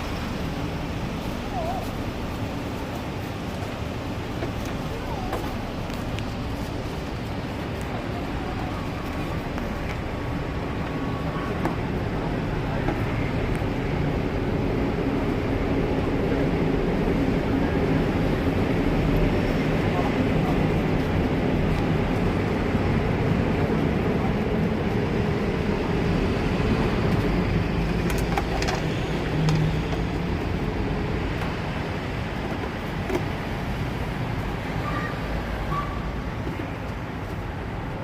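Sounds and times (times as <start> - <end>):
traffic rumble: 0.0 - 38.0
people talking: 4.6 - 6.6, 7.6 - 10.0, 19.2 - 21.7.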